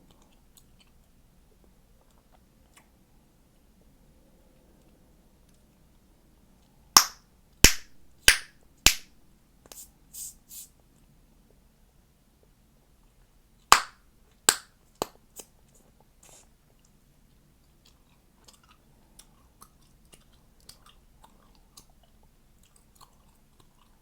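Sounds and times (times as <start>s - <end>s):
chewing gum popping: 17.8s - 24.0s.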